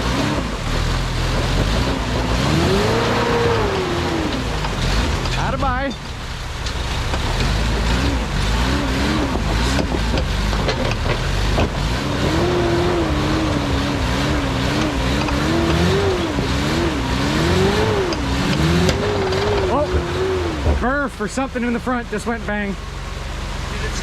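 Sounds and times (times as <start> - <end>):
engine revving under load: 0.0 - 5.9, 6.8 - 24.0
sharp knocks: 9.2 - 11.9, 18.0 - 21.0.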